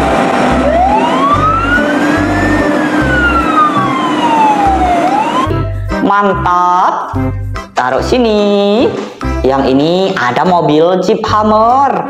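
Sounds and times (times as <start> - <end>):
wailing siren: 0.0 - 5.6
music with pulsing bass: 0.0 - 6.6, 7.2 - 8.4.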